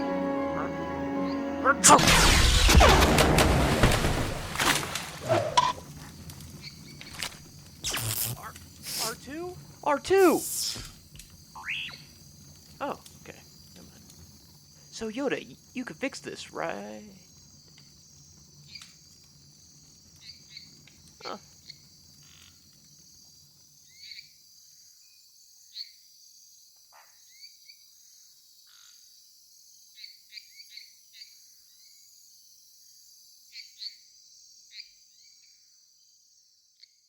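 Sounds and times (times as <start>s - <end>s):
insects chorus: 0.5s - 37.0s.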